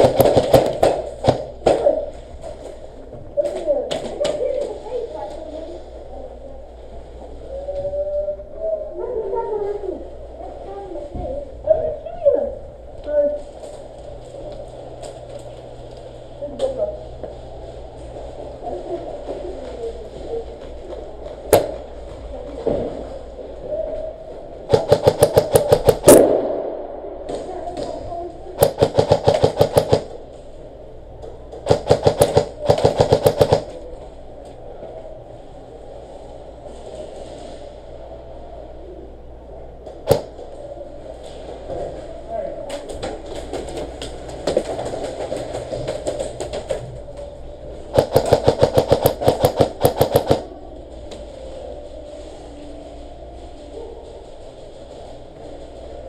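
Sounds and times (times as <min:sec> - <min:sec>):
airsoft gun automatic fire: 0:00.0 - 0:01.5, 0:24.7 - 0:26.7, 0:28.6 - 0:30.2, 0:31.6 - 0:33.8, 0:40.1 - 0:40.4, 0:47.9 - 0:50.5.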